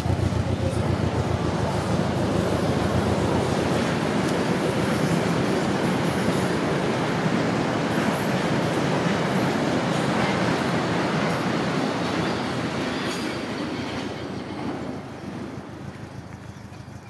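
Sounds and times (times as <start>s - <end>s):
car engine running rough: 0.0s - 3.6s.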